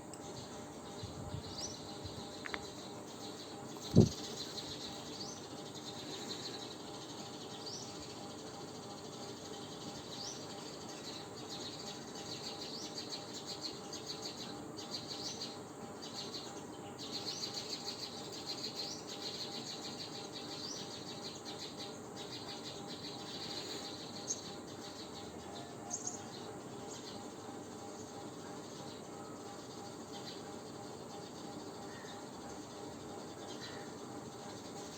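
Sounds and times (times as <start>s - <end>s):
insect chirring: 0.0s - 9.5s
bird-like chirps: 0.2s - 16.3s.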